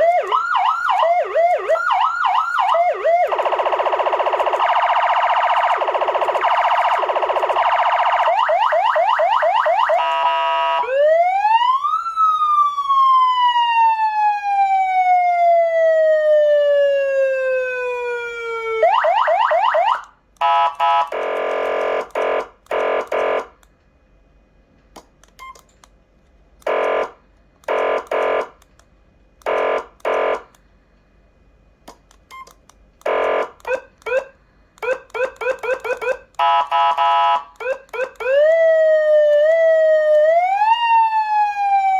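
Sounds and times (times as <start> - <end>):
electronic siren: 0.0 - 23.5, 33.0 - 41.9.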